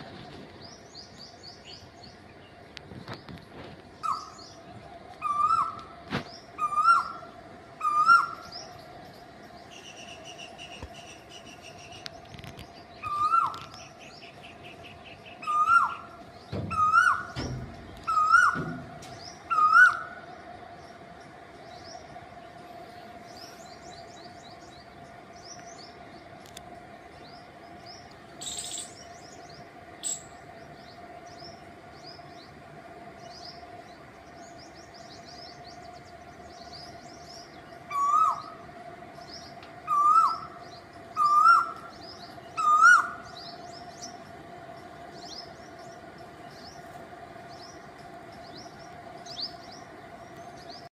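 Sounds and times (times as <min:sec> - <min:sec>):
small birds chirping: 0:00.0 - 0:50.9
cuckoo calling: 0:04.0 - 0:09.0, 0:09.6 - 0:20.4, 0:36.8 - 0:44.3.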